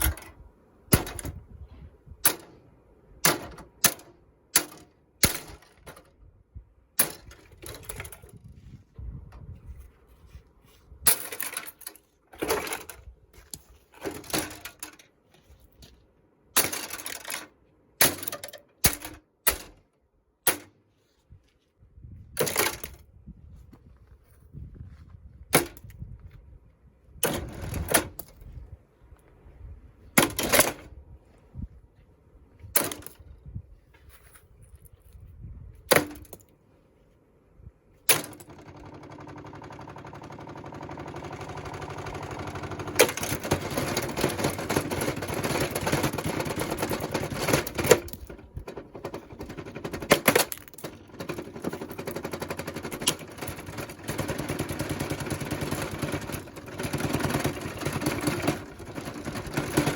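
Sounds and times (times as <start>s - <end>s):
knocks and clattering: 38.1s - 59.9s.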